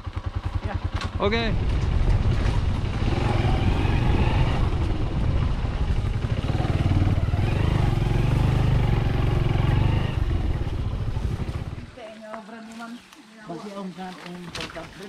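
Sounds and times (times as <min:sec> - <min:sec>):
small motorcycle engine running: 0:00.0 - 0:12.0.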